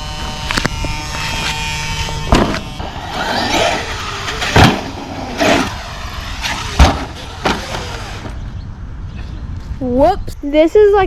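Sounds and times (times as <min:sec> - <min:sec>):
electric motor whining: 0:00.0 - 0:08.6
toy truck landing thumps: 0:02.3 - 0:08.4.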